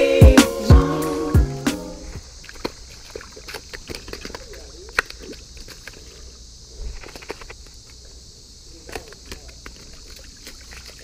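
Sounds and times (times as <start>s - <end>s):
music: 0.0s - 2.1s
steady high-pitched hiss: 0.0s - 11.0s.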